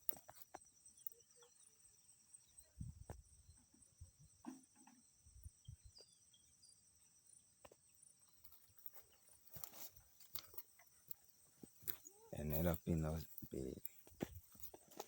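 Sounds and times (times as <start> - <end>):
insects chirring: 0.0 - 15.0
footsteps on soil: 8.4 - 15.0.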